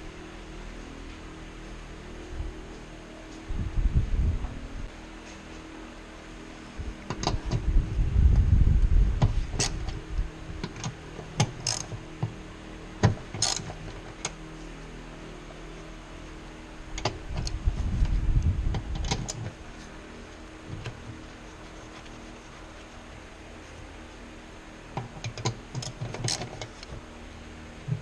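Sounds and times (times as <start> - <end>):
steady low hum: 0.0 - 28.0
low rumbling and scraping: 3.4 - 5.7, 6.7 - 10.7, 17.1 - 20.0
metallic clicks of tools: 10.6 - 12.0, 13.3 - 14.4.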